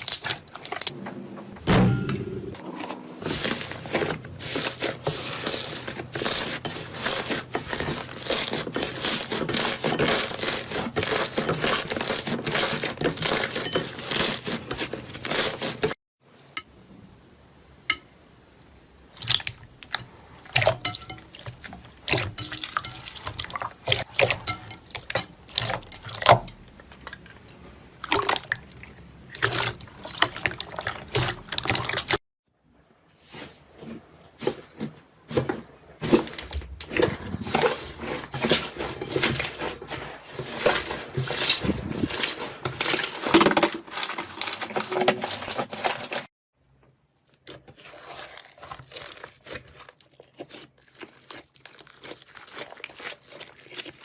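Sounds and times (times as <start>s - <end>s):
slime crackling and popping: 47.2s - 54.0s.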